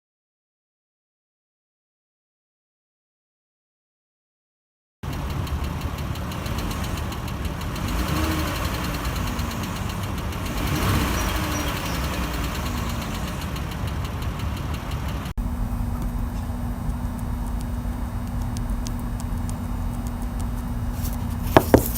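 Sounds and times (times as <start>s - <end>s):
car engine idling: 5.0s - 21.9s
rapid valvetrain ticking: 5.1s - 21.9s.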